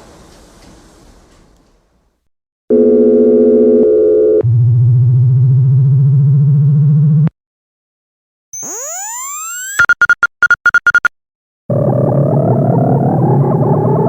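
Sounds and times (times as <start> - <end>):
hiss: 0.0 - 1.8
low warbling buzz: 4.4 - 7.3, 11.7 - 14.0
steady electronic tone: 8.6 - 11.1.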